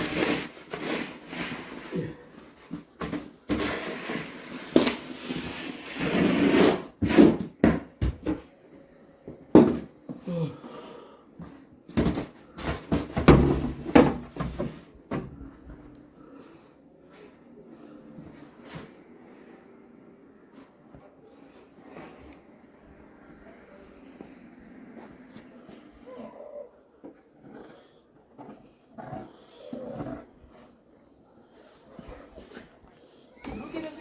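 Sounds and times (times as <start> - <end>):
snow shovel scraping: 0.0 - 2.1, 3.5 - 7.3.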